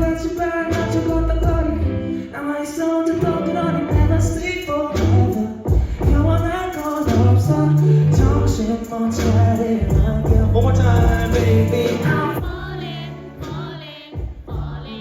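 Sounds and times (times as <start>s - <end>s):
pulsing bass beat: 0.0s - 1.8s, 3.9s - 12.7s
person singing: 0.0s - 15.0s.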